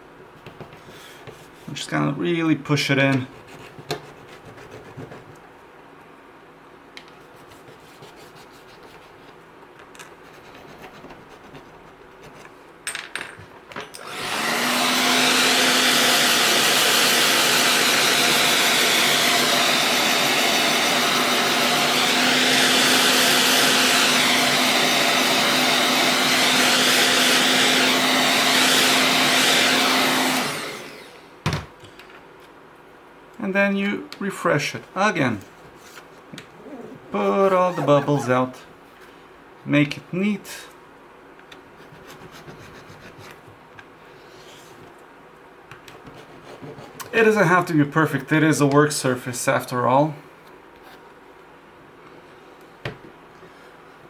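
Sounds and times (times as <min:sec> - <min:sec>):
heat gun blowing air: 0:14.0 - 0:31.2.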